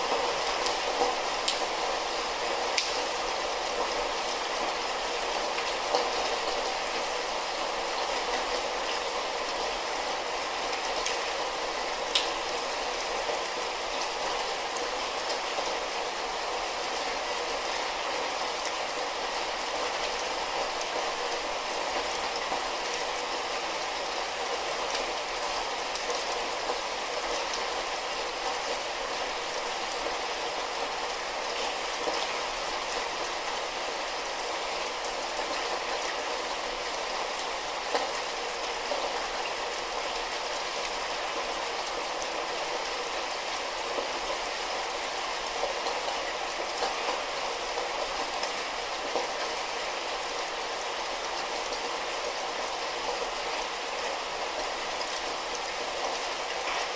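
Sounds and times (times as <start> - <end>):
light rain hissing: 0.0 - 56.9
raindrop ticks: 0.6 - 1.7, 2.7 - 3.0, 12.1 - 12.4.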